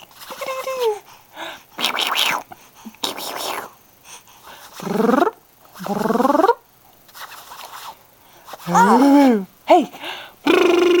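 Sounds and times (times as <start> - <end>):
baby squealing: 8.7 - 9.1.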